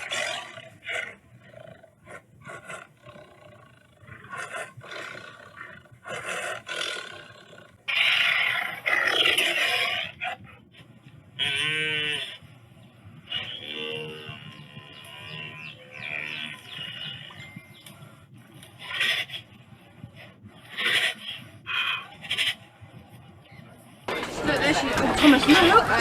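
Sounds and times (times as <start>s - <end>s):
tiger roaring and snarling: 0.0s - 10.6s.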